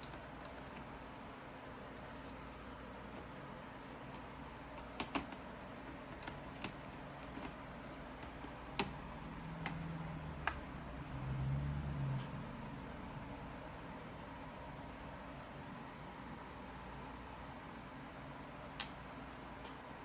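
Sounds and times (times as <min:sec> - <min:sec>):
sharp clicks and taps: 0:04.9 - 0:07.6, 0:08.2 - 0:09.0.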